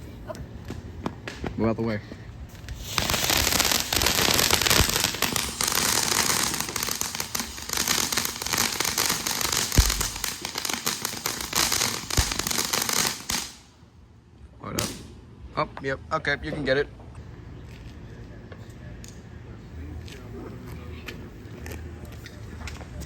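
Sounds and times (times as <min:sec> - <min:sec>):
firework crackling and hissing: 0:02.5 - 0:13.8
firework thumps: 0:02.6 - 0:13.6.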